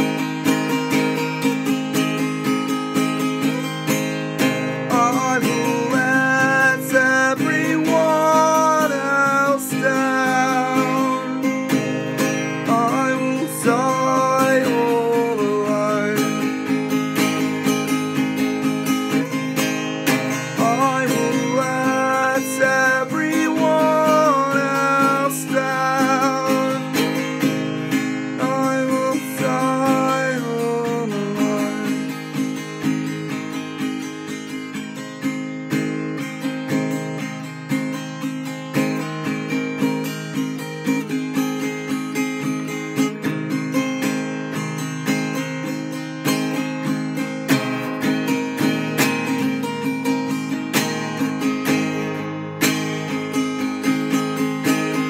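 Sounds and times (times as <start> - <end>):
acoustic guitar music: 0.0 - 55.0.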